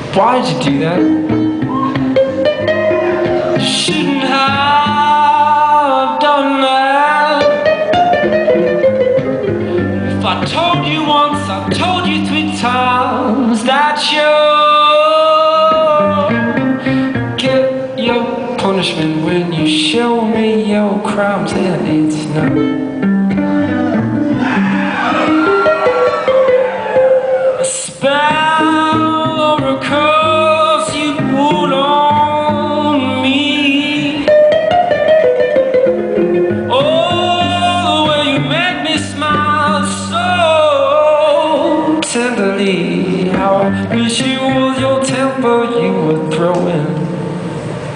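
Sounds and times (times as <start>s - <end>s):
man singing: 0.0s - 1.3s, 3.5s - 8.8s, 10.1s - 24.7s, 27.6s - 34.7s, 36.6s - 47.2s
instrumental accompaniment: 0.5s - 6.0s, 7.2s - 13.6s, 21.5s - 45.1s
high sliding melodic line: 22.6s - 29.2s.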